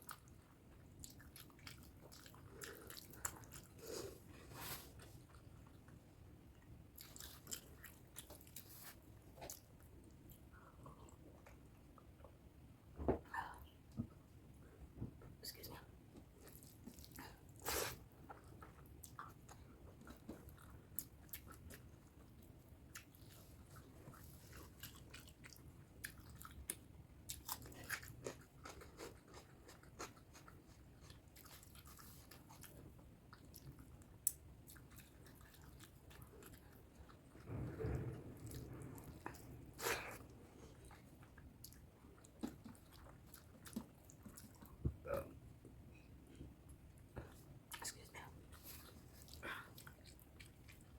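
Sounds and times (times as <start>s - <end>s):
chewing and biting food: 0.0s - 4.2s, 6.9s - 11.6s, 16.4s - 45.2s, 48.5s - 50.9s.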